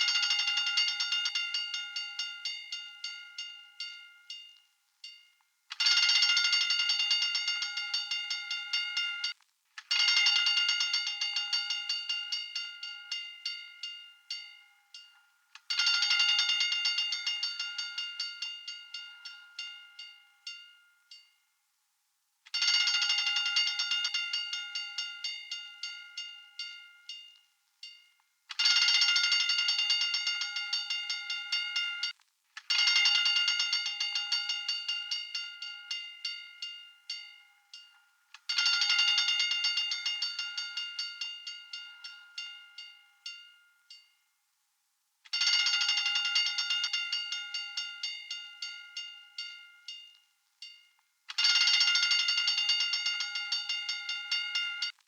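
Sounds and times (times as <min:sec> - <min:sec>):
fire alarm bell ringing: 0:00.0 - 0:21.3, 0:22.6 - 0:44.1, 0:45.3 - 0:55.0.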